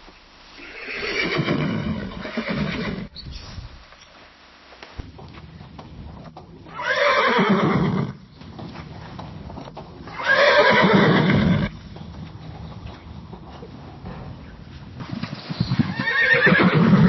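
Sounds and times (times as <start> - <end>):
horse neighing: 0.6 - 3.1, 6.7 - 8.2, 10.0 - 11.7, 15.8 - 17.0.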